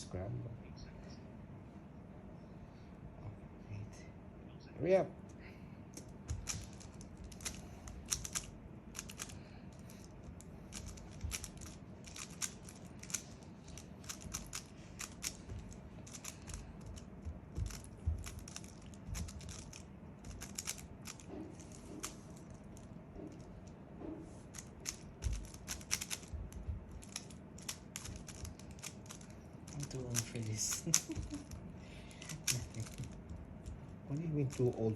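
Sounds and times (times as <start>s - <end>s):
puzzle cube plastic clicks: 6.0s - 23.5s, 24.5s - 31.6s, 32.2s - 33.8s.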